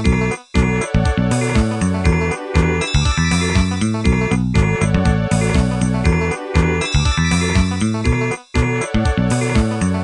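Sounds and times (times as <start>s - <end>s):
polyphonic ringtone tune: 2.1s - 7.8s.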